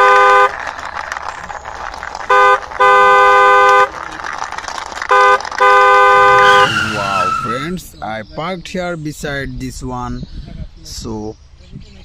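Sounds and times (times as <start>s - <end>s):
car horn beeping: 5.1s - 7.7s.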